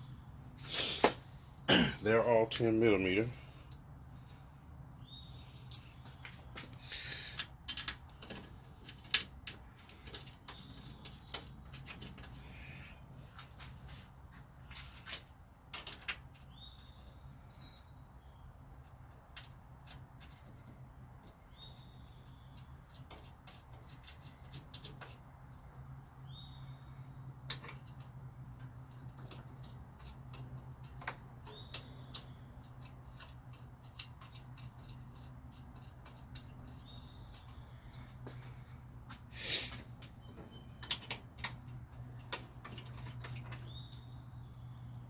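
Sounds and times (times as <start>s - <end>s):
bird chirping: 4.2s - 7.3s, 16.3s - 18.5s, 19.7s - 25.2s, 26.2s - 38.6s, 39.4s - 45.0s.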